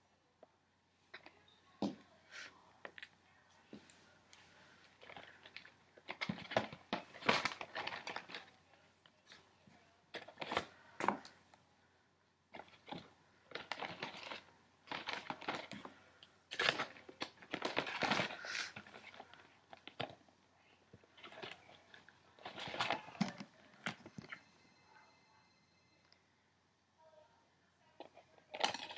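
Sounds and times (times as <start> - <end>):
crinkling and rustling: 2.7 - 11.6, 12.5 - 24.7, 27.9 - 28.9.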